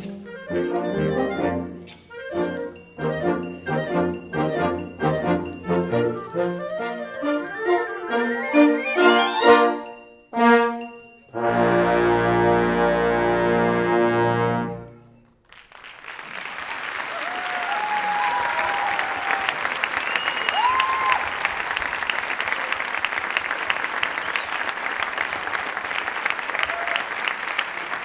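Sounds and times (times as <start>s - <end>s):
wind band brass chord: 0.0s - 15.2s
audience applause: 5.8s - 9.5s, 15.4s - 28.0s
audience cheering: 6.0s - 9.7s, 15.8s - 28.0s.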